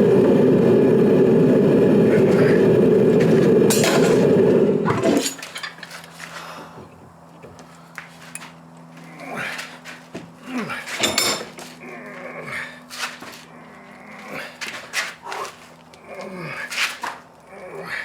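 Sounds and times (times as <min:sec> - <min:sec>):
forge roaring: 0:00.0 - 0:05.4.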